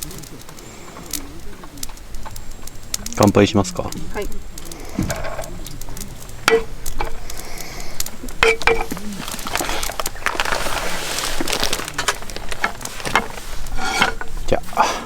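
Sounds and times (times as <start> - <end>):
hiss: 0.0 - 15.0
glasses clinking: 3.6 - 14.8.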